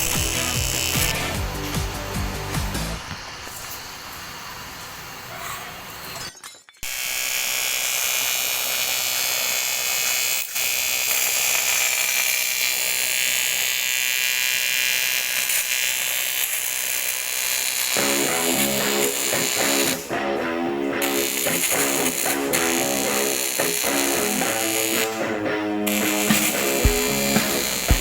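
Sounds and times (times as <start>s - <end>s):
guitar music: 0.0s - 3.1s, 18.0s - 28.0s
welding arc buzzing: 0.0s - 6.2s, 6.8s - 28.0s.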